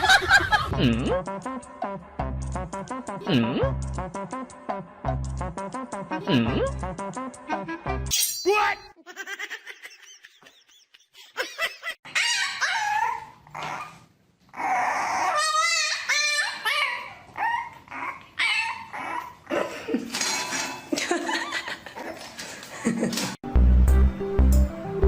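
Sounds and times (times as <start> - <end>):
dog whining and barking: 12.1 - 19.4.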